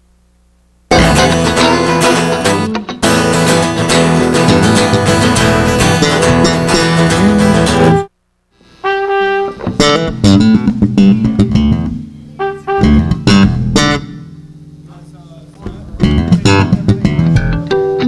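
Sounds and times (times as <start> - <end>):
guitar chords and stabs: 0.9 - 8.1, 8.7 - 18.0
live band playing loudly: 0.9 - 8.1.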